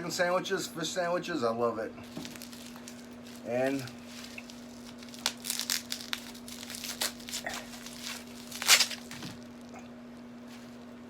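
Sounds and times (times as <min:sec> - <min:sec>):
packaging crinkling and tearing: 0:02.0 - 0:09.8.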